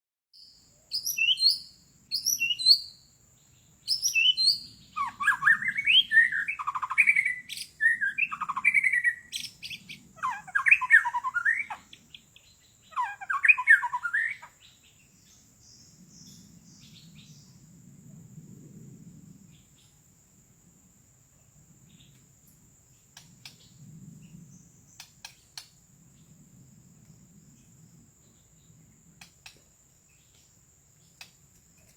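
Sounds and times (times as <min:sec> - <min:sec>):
songbird whistling and warbling: 0:00.4 - 0:03.0, 0:03.9 - 0:14.7.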